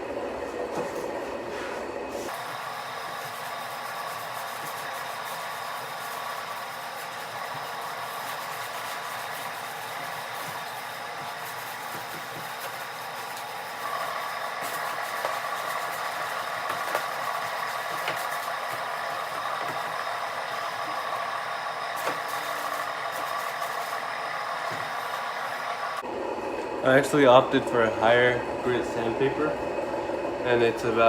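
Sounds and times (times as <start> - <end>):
hand sanding rasping: 1.4 - 25.3.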